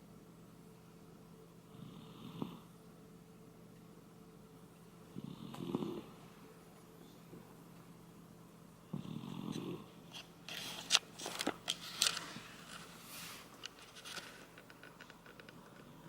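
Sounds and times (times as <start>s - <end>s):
dog snoring: 1.7s - 2.7s, 5.1s - 6.2s, 8.9s - 9.9s.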